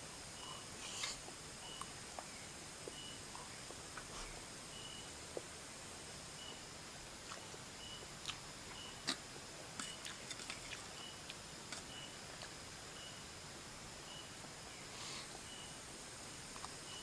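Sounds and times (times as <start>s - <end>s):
person chewing noodles: 7.2s - 12.6s.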